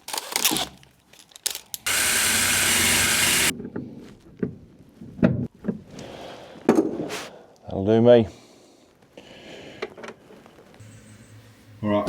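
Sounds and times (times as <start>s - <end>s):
loud hiss: 1.9s - 3.5s.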